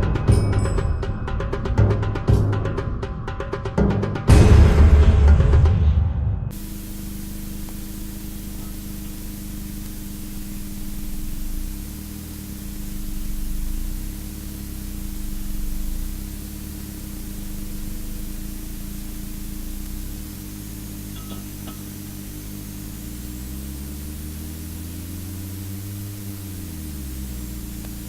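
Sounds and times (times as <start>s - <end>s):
low electrical hum: 6.5s - 28.0s
steady hiss: 6.5s - 28.0s
low rumble: 9.2s - 24.8s.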